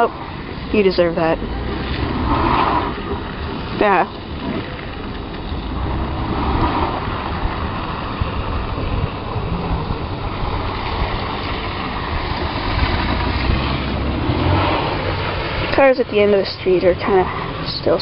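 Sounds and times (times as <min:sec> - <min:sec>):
car engine running: 0:00.0 - 0:18.0.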